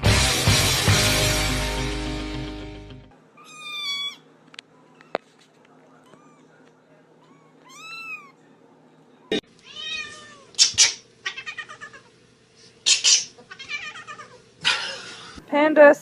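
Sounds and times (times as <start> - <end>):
cat meowing: 3.4 - 5.2, 6.0 - 6.6, 7.2 - 8.4, 9.6 - 10.6, 11.2 - 12.1, 13.5 - 14.4.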